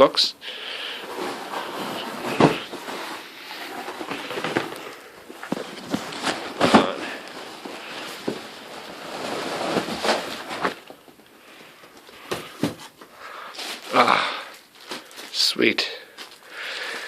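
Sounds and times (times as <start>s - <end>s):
heavy breathing: 0.4s - 5.3s, 11.4s - 17.0s
packaging rustling and scraping: 0.5s - 15.5s.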